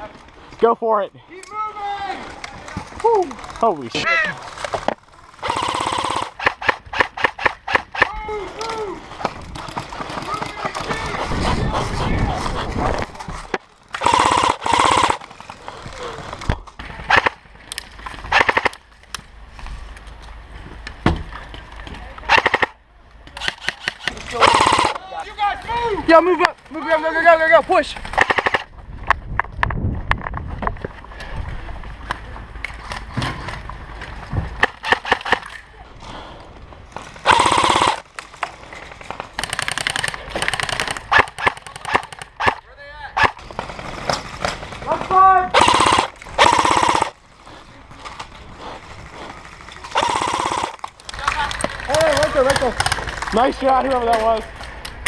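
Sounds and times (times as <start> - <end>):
airsoft guns firing: 5.4 - 8.1, 13.9 - 15.5, 16.2 - 17.4, 18.3 - 18.8, 22.3 - 22.8, 23.4 - 25.2, 28.1 - 28.7, 34.6 - 35.6, 37.2 - 38.1, 39.3 - 42.6, 43.2 - 47.2, 49.4 - 53.4.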